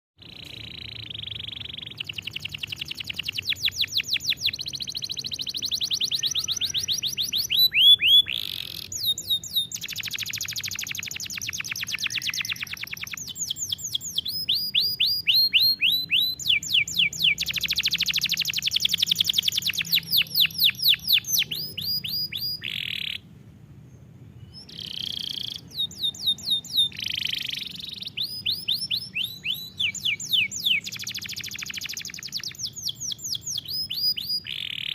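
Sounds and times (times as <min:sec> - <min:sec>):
canary singing trills: 0:00.2 - 0:34.9.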